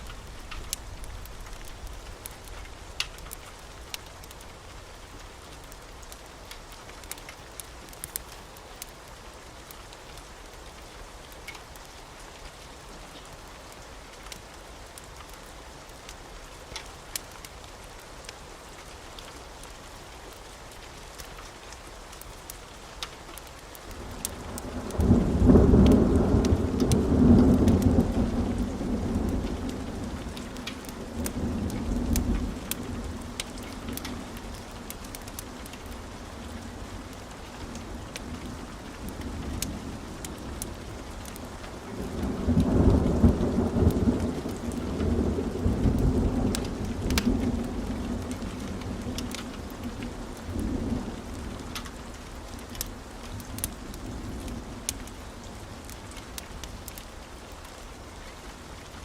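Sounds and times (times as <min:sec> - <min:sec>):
steady rain: 0:00.0 - 0:59.0
thunder rumbling: 0:24.5 - 0:51.7.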